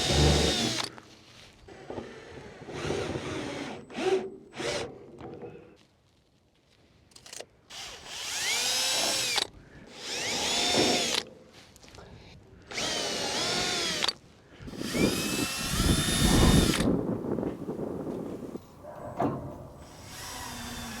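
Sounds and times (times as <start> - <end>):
power drill whine: 0.0 - 0.9, 7.7 - 11.2, 12.7 - 16.9, 19.8 - 21.0.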